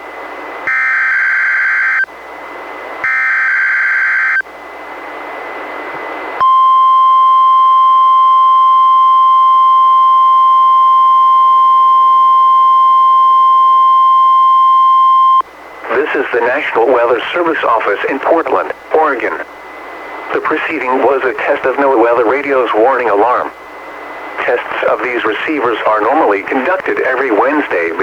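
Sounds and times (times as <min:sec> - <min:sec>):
steady alarm tone: 0:00.6 - 0:02.1, 0:03.0 - 0:04.4
radio hiss: 0:15.8 - 0:28.0.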